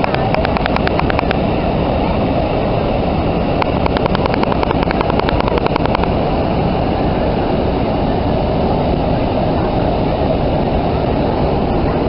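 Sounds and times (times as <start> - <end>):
rapid high ticks: 0.0 - 1.4, 3.6 - 6.1.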